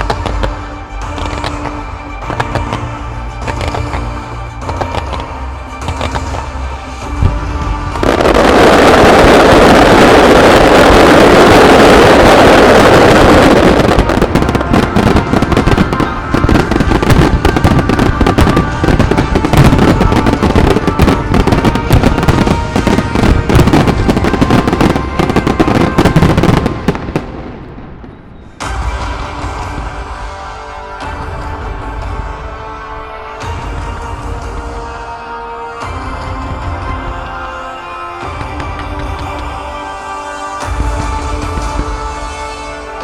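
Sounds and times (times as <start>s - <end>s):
fireworks bursts and bangs: 0.0s - 27.8s, 38.2s - 39.8s, 40.5s - 43.0s
music: 0.0s - 43.0s.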